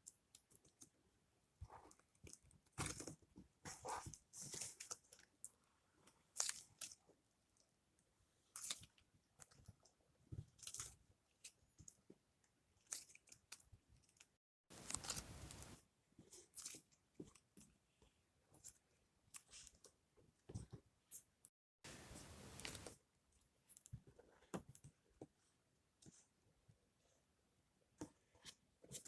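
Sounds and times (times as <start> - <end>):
plastic packaging rustle: 14.8 - 15.8.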